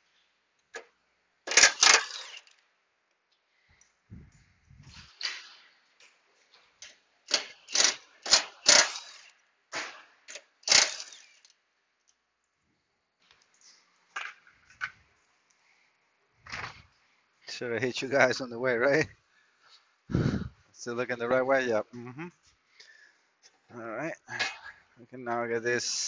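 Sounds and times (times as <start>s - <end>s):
tools clicking and knocking: 0.6s - 2.6s, 5.1s - 11.6s.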